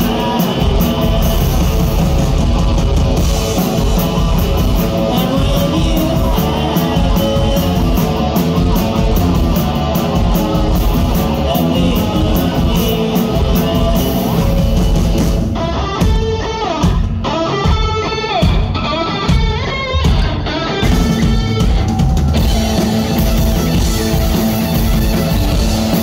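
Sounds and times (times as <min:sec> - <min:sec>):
electric guitar lead with bending notes: 0:00.0 - 0:26.0
rock band playing live: 0:00.0 - 0:26.0.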